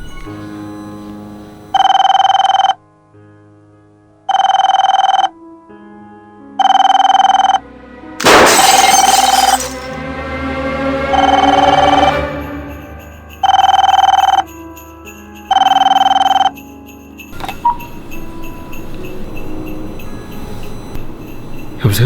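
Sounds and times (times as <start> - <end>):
telephone ringing: 0.0 - 2.8, 4.3 - 5.3, 6.6 - 7.6, 11.1 - 12.1, 13.4 - 14.5, 15.5 - 16.6
quiet background music: 0.0 - 22.0.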